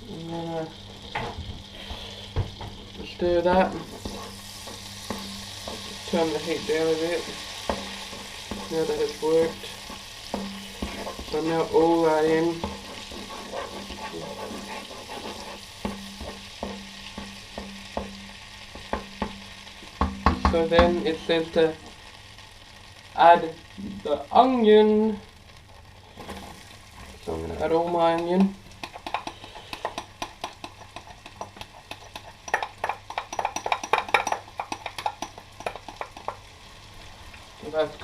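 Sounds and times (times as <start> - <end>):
butter and oil sizzling in a saucepan: 0.0 - 38.0
spoon knocking against a pan: 7.2 - 8.7, 10.3 - 11.3, 15.8 - 21.0, 28.1 - 36.4.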